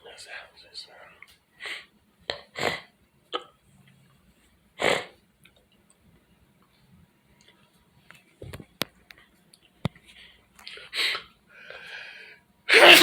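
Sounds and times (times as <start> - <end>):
person sneezing: 12.7 - 13.0.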